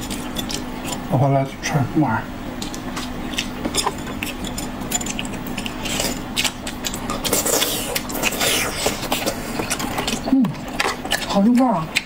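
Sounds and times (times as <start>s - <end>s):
person chewing and slurping: 0.0s - 1.1s, 2.5s - 12.0s
utensils scraping dishes: 3.3s - 10.3s.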